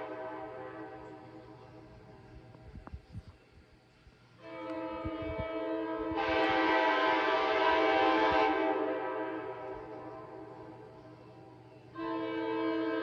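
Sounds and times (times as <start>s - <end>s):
locomotive air horn chord: 0.0s - 1.9s, 4.4s - 11.1s, 11.9s - 13.0s.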